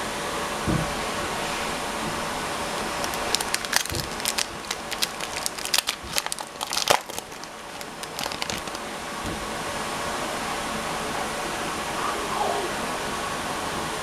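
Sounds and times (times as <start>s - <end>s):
wrapper crinkling: 2.7s - 8.9s.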